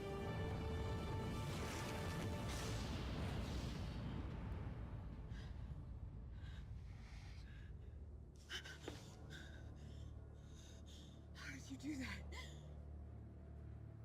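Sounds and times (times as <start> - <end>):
low steady rumble: 0.0 - 14.0
person breathing heavily: 5.3 - 11.4.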